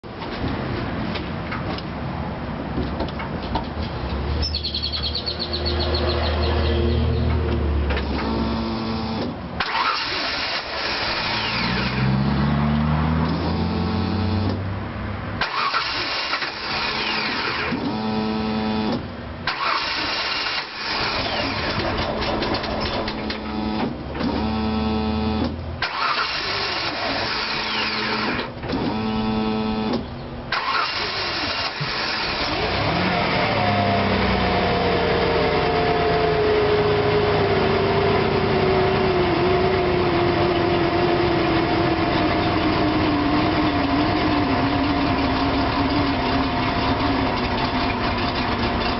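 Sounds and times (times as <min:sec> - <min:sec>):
car engine running with whine: 0:04.4 - 0:48.9
car starter cranking: 0:08.0 - 0:12.1, 0:15.4 - 0:33.0.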